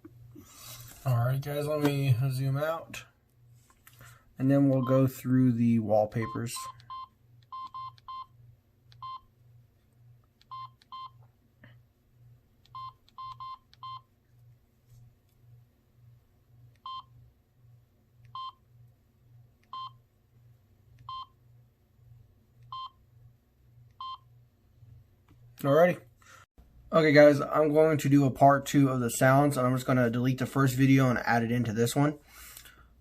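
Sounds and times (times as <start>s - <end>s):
phone keypad beeps: 6.2s - 8.3s, 9.0s - 9.3s, 10.5s - 11.2s, 12.7s - 14.0s, 16.8s - 17.1s, 18.4s - 18.6s, 19.7s - 20.0s, 21.1s - 21.3s, 22.7s - 23.0s, 24.0s - 24.2s.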